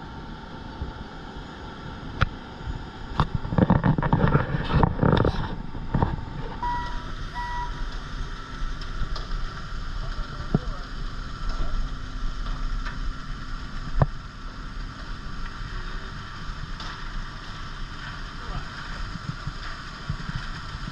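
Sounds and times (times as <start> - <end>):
diesel truck engine running: 0.0 - 20.9
short beeps: 6.6 - 7.8.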